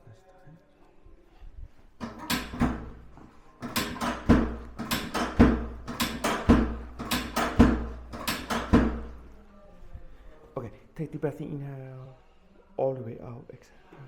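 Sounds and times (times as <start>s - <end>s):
sharp percussive hits: 2.0s - 9.2s
deep thud: 4.0s - 9.2s.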